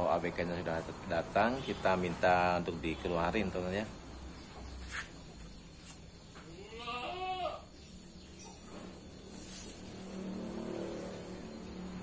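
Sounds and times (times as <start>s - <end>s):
goat bleating: 6.5s - 7.7s.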